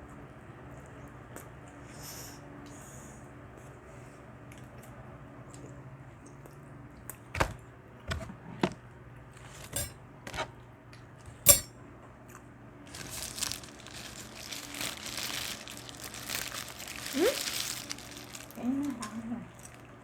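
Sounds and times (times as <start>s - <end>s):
knocks and clinks of containers: 9.7s - 10.0s, 11.3s - 11.7s
crinkling paper packaging: 12.8s - 20.0s.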